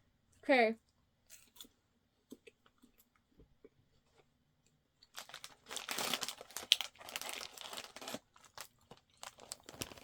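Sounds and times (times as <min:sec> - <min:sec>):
plastic wrapper crinkling: 0:05.0 - 0:10.0.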